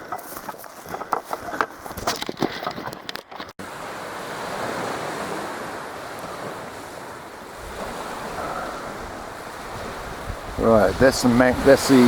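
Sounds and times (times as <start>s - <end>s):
waves breaking on beach: 3.6s - 12.0s
wind buffeting microphone: 4.8s - 12.0s.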